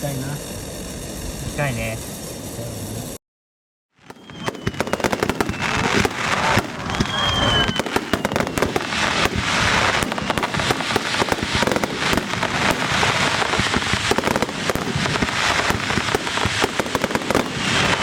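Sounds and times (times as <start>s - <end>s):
fireworks bangs and crackling: 0.0s - 3.2s, 4.0s - 18.0s.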